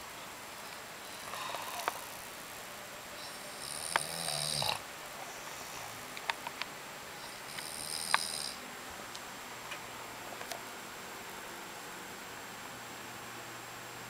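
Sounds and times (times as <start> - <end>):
whistling snores: 1.0 - 2.3, 3.2 - 4.8, 7.2 - 8.6.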